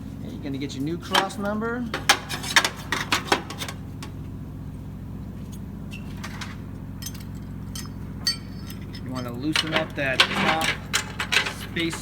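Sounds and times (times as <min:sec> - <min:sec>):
steady low hum: 0:00.0 - 0:12.0
sharp metallic clicks and knocks: 0:06.2 - 0:12.0.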